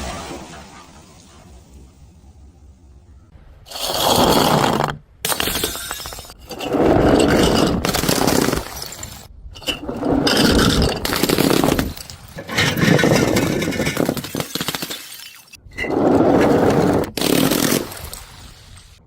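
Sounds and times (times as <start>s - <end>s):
objects crunching and smashing: 3.8s - 15.6s, 16.4s - 18.2s.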